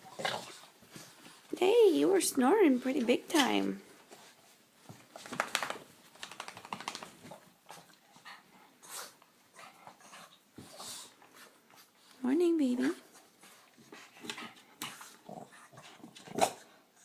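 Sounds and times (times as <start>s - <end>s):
animal breathy sniffs: 8.7s - 9.2s.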